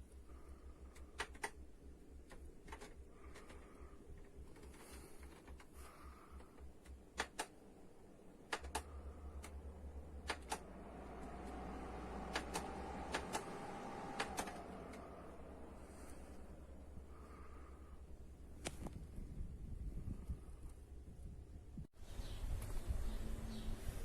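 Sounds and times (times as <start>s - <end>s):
fan humming: 0.0s - 20.6s
sharp clicks: 0.8s - 7.7s, 8.4s - 15.3s.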